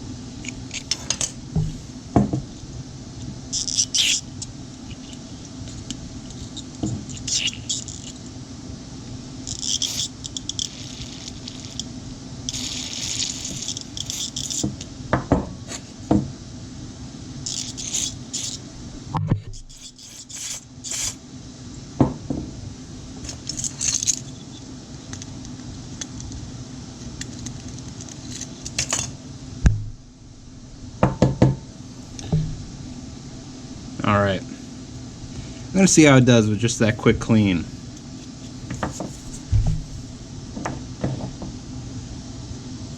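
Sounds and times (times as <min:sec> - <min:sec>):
steady low hum: 0:00.0 - 0:42.9
spray hissing: 0:19.6 - 0:21.2
metal parts clicking and clinking: 0:23.2 - 0:24.5, 0:27.2 - 0:29.2.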